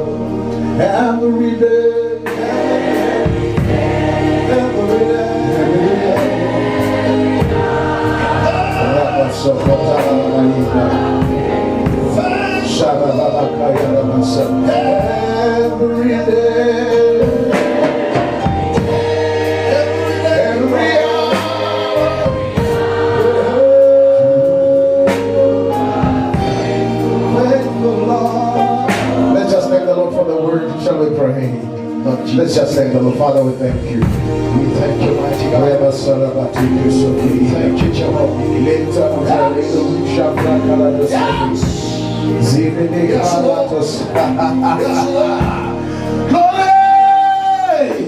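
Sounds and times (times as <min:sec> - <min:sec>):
congregation singing worship chorus: 0:00.0 - 0:48.0
instrumental backing: 0:00.0 - 0:48.0.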